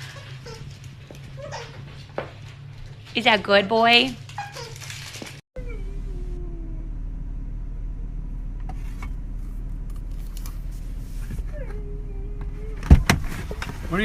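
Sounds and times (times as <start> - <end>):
dog whining: 0.0 - 2.0, 4.2 - 5.0, 5.6 - 7.0, 11.4 - 13.5
low hum: 5.6 - 14.0.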